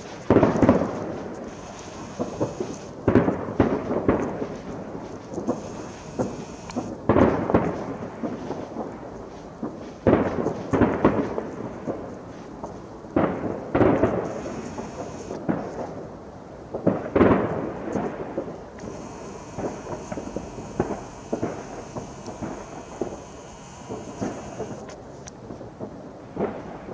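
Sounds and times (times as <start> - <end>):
distant fireworks booming: 0.3 - 7.6, 13.2 - 15.7, 16.8 - 24.9.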